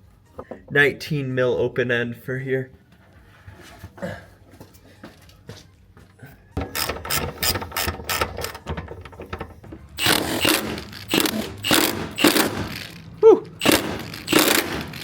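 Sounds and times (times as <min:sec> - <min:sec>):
hand ratchet clicking: 0:06.6 - 0:15.0.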